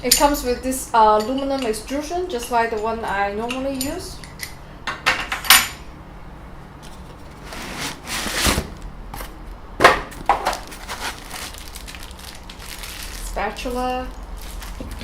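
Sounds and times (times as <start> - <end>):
parts knocking when handled: 6.5 - 12.1
packaging rustling and crinkling: 6.6 - 13.3.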